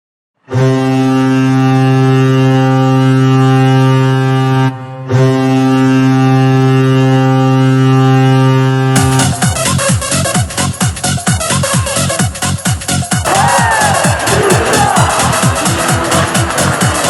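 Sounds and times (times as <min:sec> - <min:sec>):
goal horn blaring: 0:00.5 - 0:10.8.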